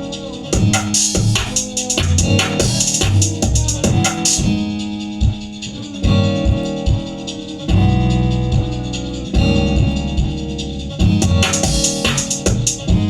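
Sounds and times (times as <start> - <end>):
beat music with keyboard chords: 0.0 - 13.0
deep bass notes: 0.0 - 13.0
drum hits: 0.0 - 13.0
high hi-hats: 0.0 - 13.0.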